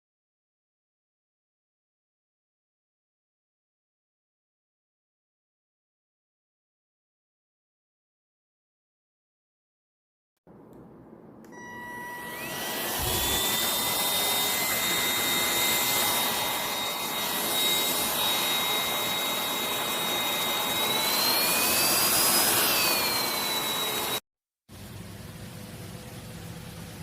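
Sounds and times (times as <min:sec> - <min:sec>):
vacuum cleaner motor whine: 0:11.4 - 0:24.2.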